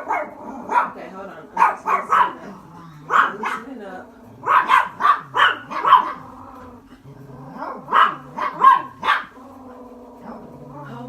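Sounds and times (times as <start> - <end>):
dog barking: 0.0 - 3.8, 4.4 - 6.4, 7.6 - 9.4
vibration machine hum: 0.0 - 11.0.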